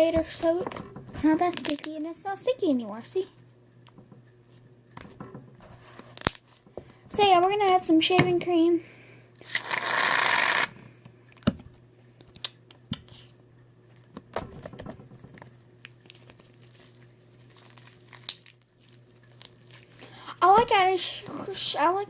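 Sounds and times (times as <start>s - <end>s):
sticky slime squelching: 15.4s - 22.0s.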